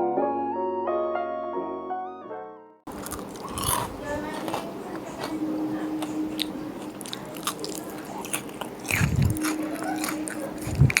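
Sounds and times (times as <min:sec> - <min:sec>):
person chewing crunchy food: 0:02.9 - 0:11.0.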